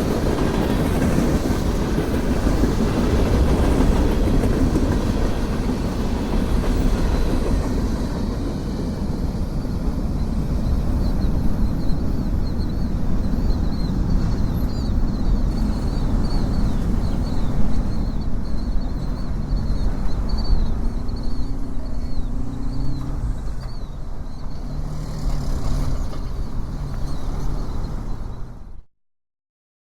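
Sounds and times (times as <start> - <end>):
freight train rumbling past: 0.0 - 28.9.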